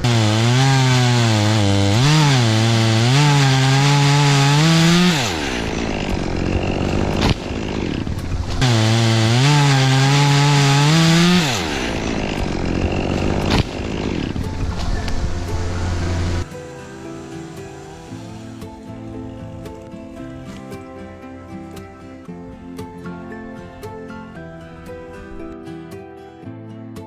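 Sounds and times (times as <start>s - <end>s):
chainsaw cutting wood: 0.0s - 19.9s.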